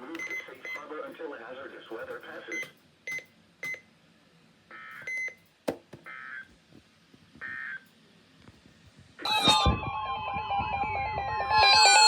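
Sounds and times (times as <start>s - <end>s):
alert tone with falling pitches: 9.3s - 12.0s.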